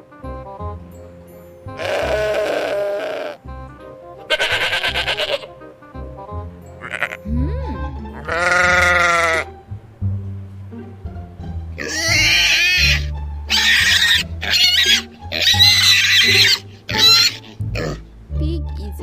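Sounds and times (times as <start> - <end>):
background music with low beat: 0.0 - 19.0
animal bleat: 1.8 - 3.4, 4.3 - 5.5, 6.8 - 7.3, 8.2 - 9.5, 11.8 - 18.0
pigs squealing: 1.8 - 3.4, 4.3 - 5.5, 6.8 - 7.3, 8.2 - 9.5, 11.8 - 18.0.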